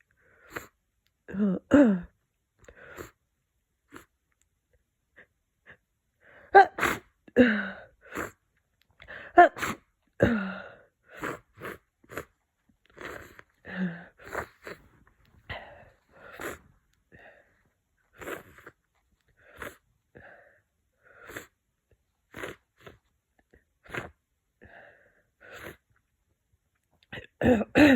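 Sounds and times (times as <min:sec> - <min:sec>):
person sniffing: 0:06.6 - 0:07.0, 0:13.0 - 0:16.7, 0:18.2 - 0:18.7, 0:19.4 - 0:19.8, 0:21.2 - 0:21.6
person sneezing: 0:06.6 - 0:07.1, 0:09.4 - 0:10.5, 0:27.4 - 0:27.9
breathing through blocked nose: 0:13.0 - 0:17.5.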